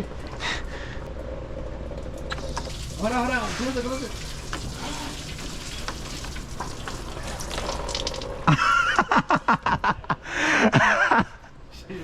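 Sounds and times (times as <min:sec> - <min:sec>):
liquid glugging: 0:02.2 - 0:08.5
coolant splashing out: 0:02.2 - 0:08.9.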